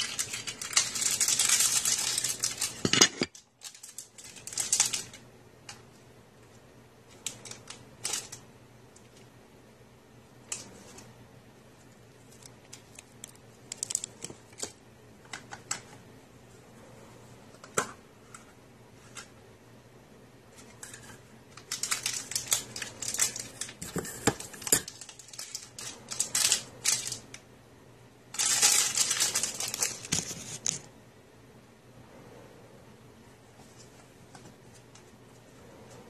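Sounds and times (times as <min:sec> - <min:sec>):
packaging crinkling: 0:00.0 - 0:05.8, 0:07.1 - 0:08.4, 0:12.1 - 0:14.8, 0:20.6 - 0:27.4, 0:28.3 - 0:30.9.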